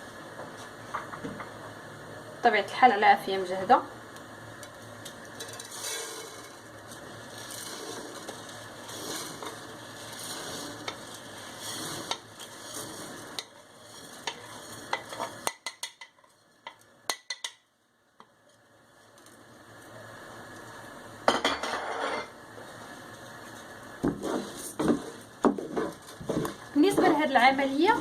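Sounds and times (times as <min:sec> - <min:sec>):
rice sizzling in oil: 0:03.4 - 0:28.0
spoon scraping a pan: 0:05.4 - 0:06.6, 0:07.4 - 0:16.7
utensil tapping on a pan: 0:15.0 - 0:17.6.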